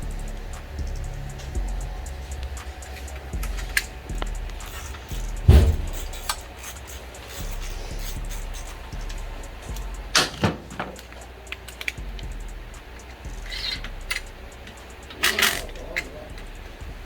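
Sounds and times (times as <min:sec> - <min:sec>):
low steady hum: 0:00.0 - 0:17.0
metallic clicks of tools: 0:01.3 - 0:16.8
heavy thump: 0:03.3 - 0:06.3.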